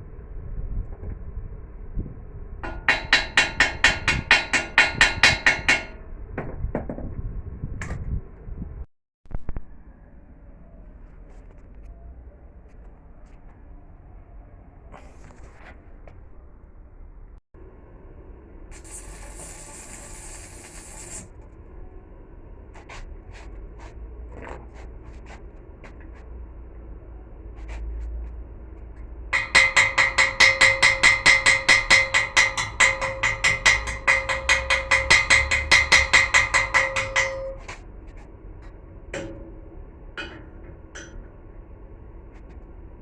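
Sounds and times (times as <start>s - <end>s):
hammer striking steel: 2.6s - 6.0s, 29.4s - 37.8s, 39.2s - 41.4s
light metal knocks and clanks: 29.4s - 39.6s, 40.2s - 41.4s.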